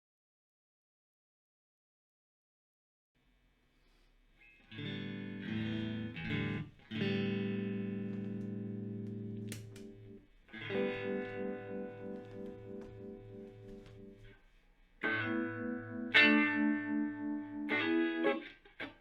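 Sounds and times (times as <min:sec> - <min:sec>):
electric guitar chords: 0:04.7 - 0:14.3, 0:15.0 - 0:19.0.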